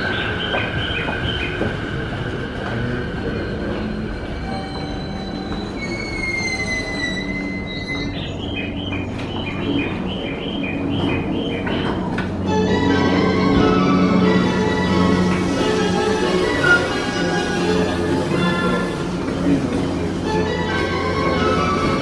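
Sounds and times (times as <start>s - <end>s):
electric train rumbling: 0.0s - 22.0s
high-pitched wheel squeal: 3.2s - 8.6s.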